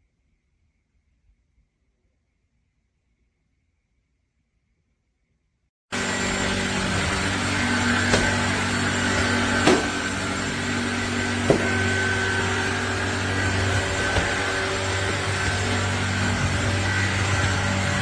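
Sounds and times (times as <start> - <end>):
vacuum cleaner motor whirring: 5.9 - 18.0.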